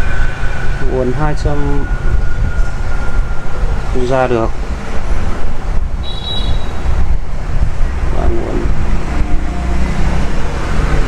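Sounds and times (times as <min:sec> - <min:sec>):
low rumble: 0:00.0 - 0:11.0
high-pitched beep: 0:06.0 - 0:06.8.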